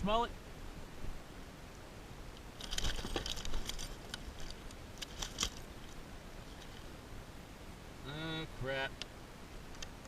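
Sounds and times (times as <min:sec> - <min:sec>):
fishing tackle rattling: 0:02.6 - 0:06.0.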